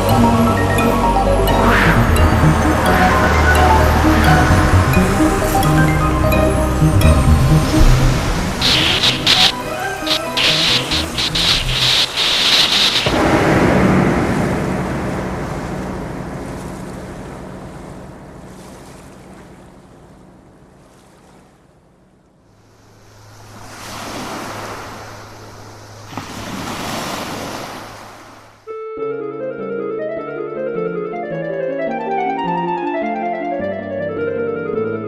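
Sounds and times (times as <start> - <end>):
rhythmic music: 0.0 - 13.2
low steady drone: 0.0 - 20.9
ocean waves washing in: 0.0 - 28.6.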